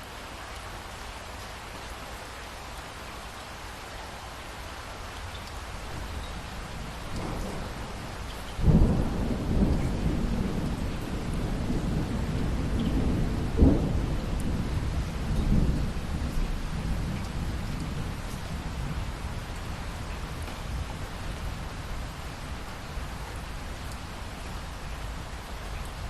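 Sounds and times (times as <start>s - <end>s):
steady rain: 0.0s - 26.0s
thunder rumbling: 6.8s - 22.8s
sharp crack of thunder: 7.1s - 19.0s.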